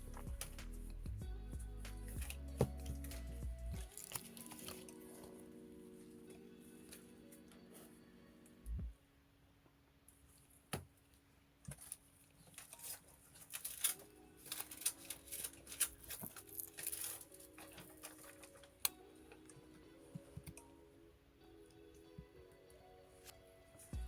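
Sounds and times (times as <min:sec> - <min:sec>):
soft background music: 0:00.0 - 0:09.3, 0:11.8 - 0:24.0
small tools clicking and tapping: 0:11.7 - 0:19.0.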